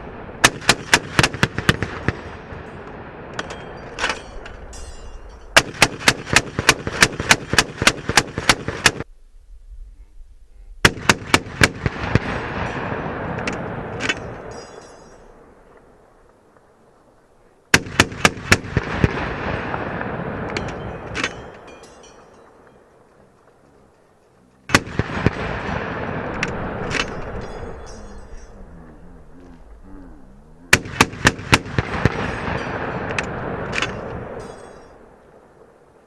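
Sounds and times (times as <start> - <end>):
rolling echo: 0.0 - 9.1, 10.8 - 36.0.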